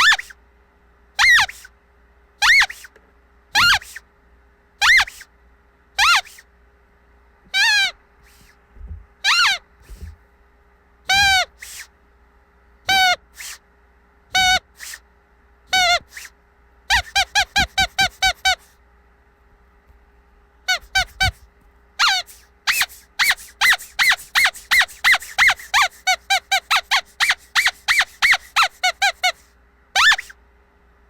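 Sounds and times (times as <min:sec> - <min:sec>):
squeaky dog toy: 0:00.0 - 0:00.4, 0:01.2 - 0:01.7, 0:02.4 - 0:04.0, 0:04.8 - 0:05.3, 0:06.0 - 0:06.5, 0:07.5 - 0:08.5, 0:09.2 - 0:10.1, 0:11.1 - 0:11.9, 0:12.9 - 0:13.6, 0:14.3 - 0:15.0, 0:15.7 - 0:16.3, 0:16.9 - 0:18.7, 0:20.7 - 0:21.4, 0:22.0 - 0:30.4.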